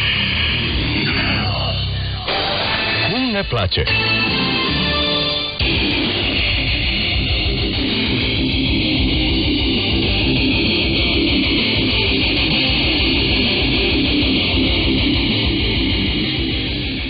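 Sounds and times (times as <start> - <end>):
radio hiss: 0.0 - 3.9
guitar music on am radio: 0.0 - 17.0.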